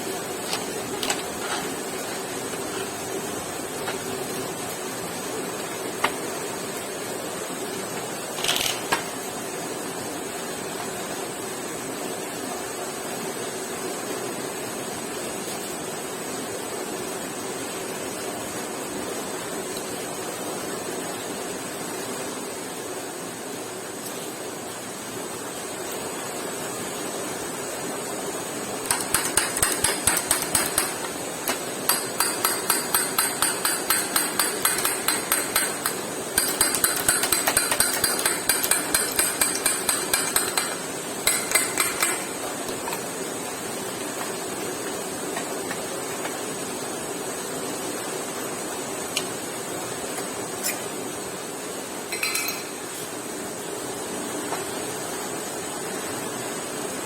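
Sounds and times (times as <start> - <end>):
steady background hiss: 0.0 - 57.0
hammer striking metal: 28.9 - 42.5.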